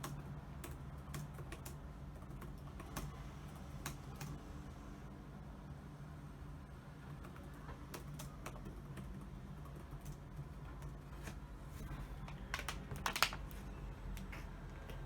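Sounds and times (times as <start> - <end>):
computer keyboard typing: 0.0 - 4.4, 7.2 - 10.6, 12.2 - 13.6.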